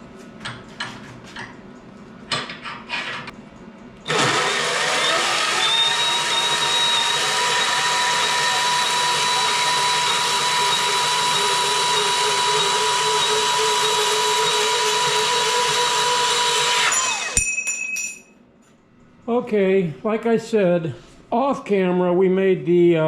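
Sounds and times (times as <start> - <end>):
power tool motor whining: 4.1 - 17.4.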